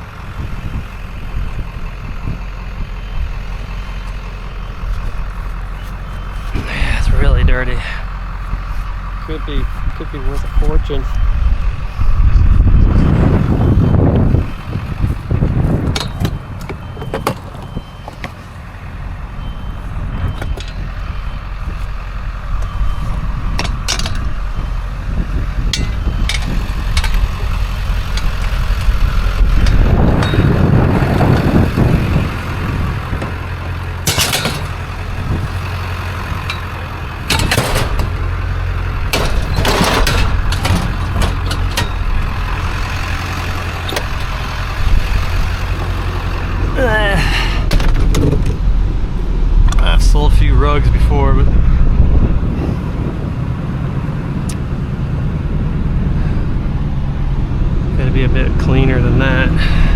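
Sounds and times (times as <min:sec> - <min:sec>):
vehicle engine running: 0:00.0 - 0:59.9
sharp knocks and clanks: 0:15.6 - 0:18.5, 0:20.2 - 0:21.1, 0:23.5 - 0:24.3, 0:25.7 - 0:28.6, 0:29.5 - 0:44.4.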